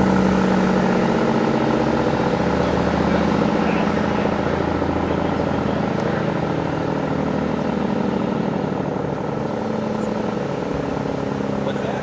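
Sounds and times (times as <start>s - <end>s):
siren low fluttering tone: 0.0s - 3.2s.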